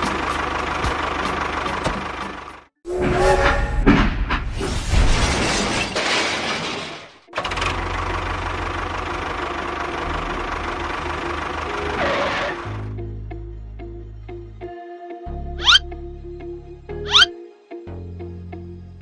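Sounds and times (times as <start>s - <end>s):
small engine running: 0.0s - 2.6s, 7.4s - 12.9s.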